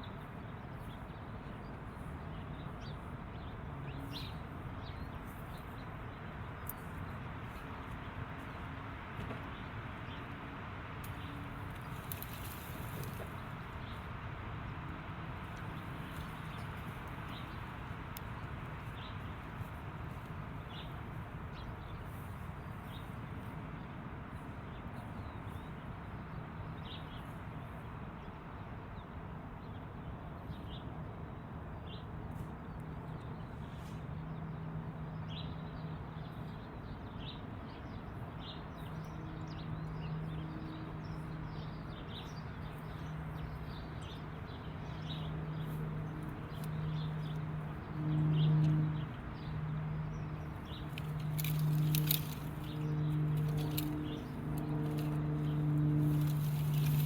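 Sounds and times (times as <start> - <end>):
low engine hum: 29.3 - 57.0
birds chirping: 41.0 - 57.0.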